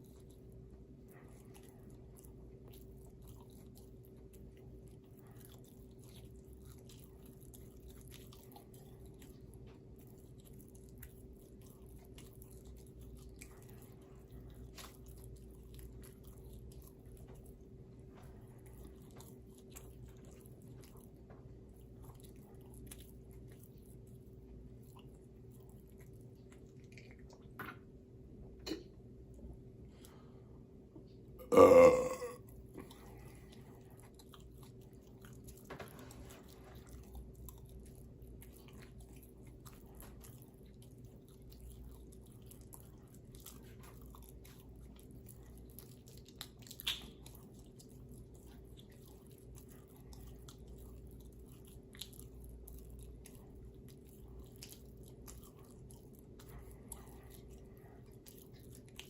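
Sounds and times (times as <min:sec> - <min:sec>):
low steady hum: 0:00.0 - 0:59.0
person burping: 0:31.4 - 0:32.4.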